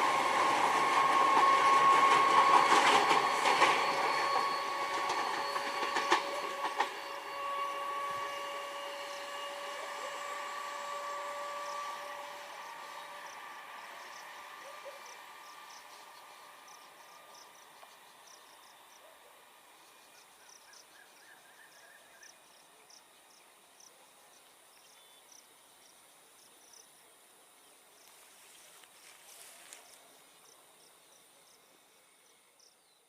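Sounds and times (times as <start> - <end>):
electric train passing: 0.0 - 23.8
crickets chirping: 0.0 - 33.0.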